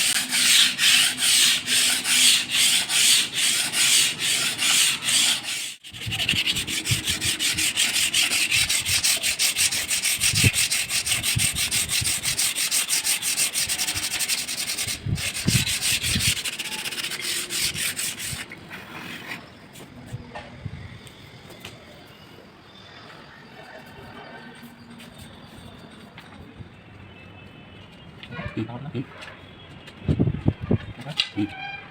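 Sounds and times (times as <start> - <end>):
sandpaper rubbing on wood: 0.0 - 18.5.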